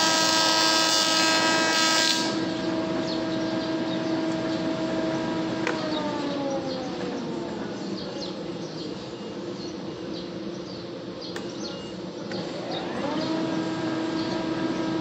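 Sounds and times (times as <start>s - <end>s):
thickness planer motor humming: 0.0s - 7.7s, 12.5s - 15.0s.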